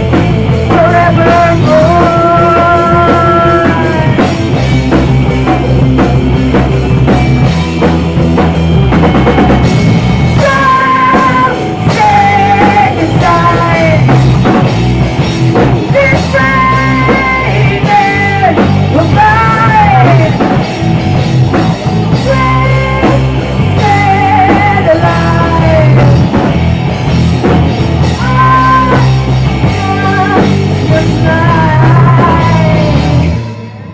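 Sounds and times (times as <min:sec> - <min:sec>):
rock band playing live: 0:00.0 - 0:33.9
singer's wavering vocals: 0:10.4 - 0:14.2, 0:16.0 - 0:20.4, 0:28.1 - 0:33.9.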